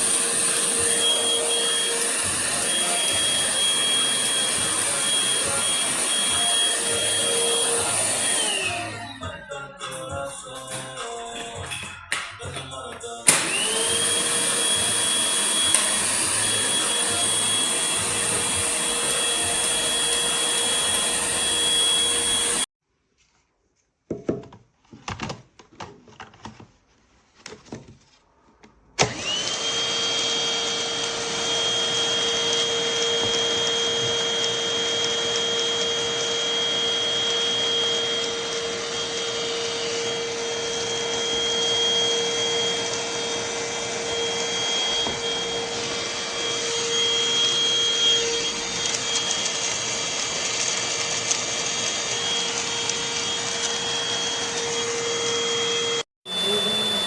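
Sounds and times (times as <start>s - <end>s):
vacuum motor whining: 0.0s - 9.3s, 13.2s - 22.7s, 29.0s - 57.0s.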